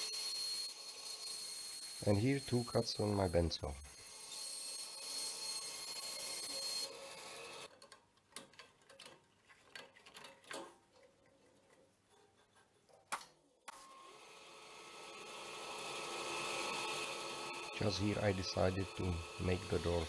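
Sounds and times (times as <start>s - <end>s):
bandsaw cutting wood: 0.0s - 7.7s, 14.4s - 20.0s.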